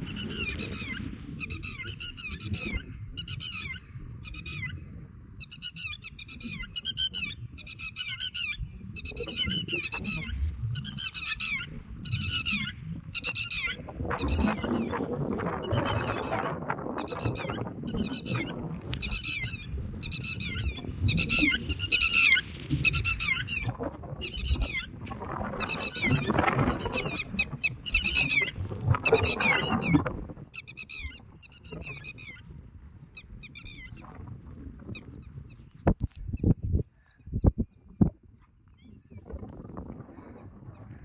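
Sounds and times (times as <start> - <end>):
birds calling loudly: 5.4 - 14.9.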